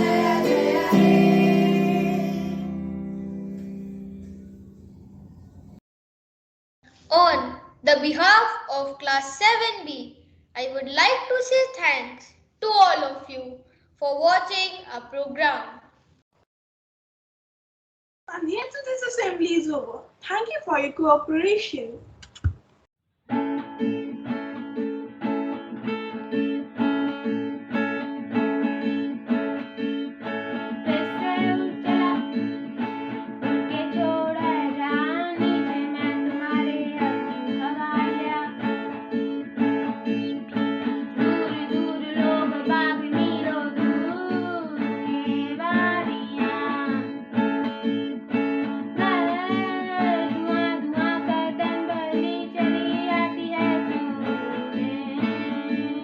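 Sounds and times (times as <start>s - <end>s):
person singing: 0.0s - 3.9s, 30.8s - 32.6s, 33.4s - 39.0s, 39.8s - 47.2s, 49.0s - 56.0s
acoustic guitar strumming: 0.0s - 5.0s, 23.3s - 56.0s.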